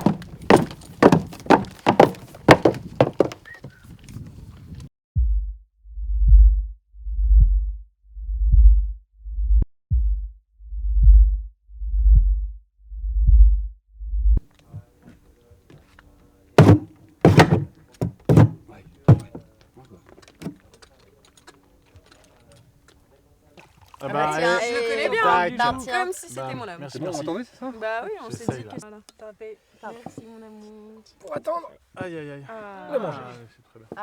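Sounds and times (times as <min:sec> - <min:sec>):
deep muffled heartbeat throbbing: 0:05.2 - 0:13.7
sharp clicks and knocks: 0:16.6 - 0:19.4.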